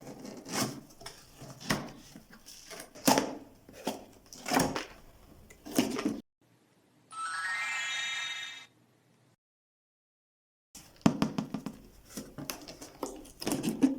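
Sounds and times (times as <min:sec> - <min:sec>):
fingers knocking on packages: 0:10.9 - 0:13.9.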